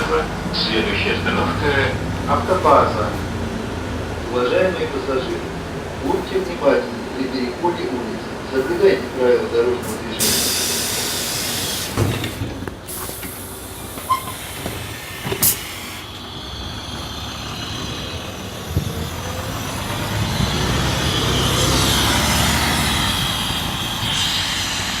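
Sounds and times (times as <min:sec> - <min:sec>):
bus engine: 0:00.0 - 0:25.0
road noise: 0:00.0 - 0:25.0
compressed air hiss: 0:10.2 - 0:16.2, 0:19.9 - 0:25.0.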